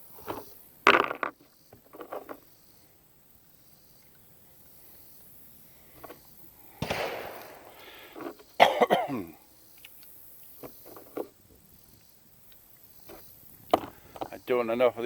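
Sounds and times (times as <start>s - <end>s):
gunshot with echo: 6.8s - 7.8s
person coughing: 8.6s - 9.4s.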